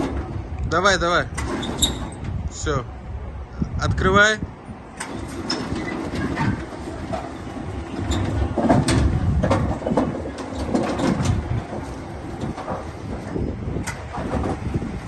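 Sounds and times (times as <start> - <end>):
metal clanks: 5.0 - 14.7.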